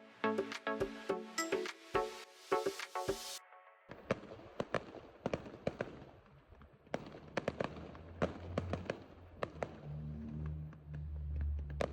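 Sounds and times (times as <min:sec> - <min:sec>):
fireworks crackling and popping: 0:02.7 - 0:11.9.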